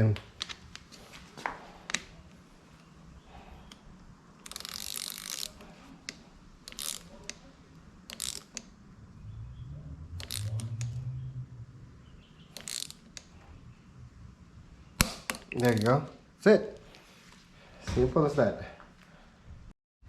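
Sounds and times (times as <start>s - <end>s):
ratcheting wrench clicking: 4.4s - 7.4s, 8.1s - 8.7s, 10.2s - 11.0s, 12.5s - 13.3s, 15.0s - 16.0s
tool clicks: 4.4s - 7.5s, 8.1s - 8.7s, 10.2s - 11.0s, 12.5s - 13.4s, 15.0s - 16.0s.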